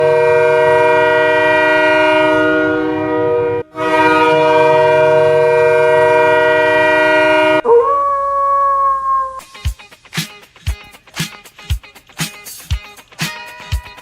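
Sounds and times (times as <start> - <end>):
multi-tone air horn blasts: 0.0 - 9.6.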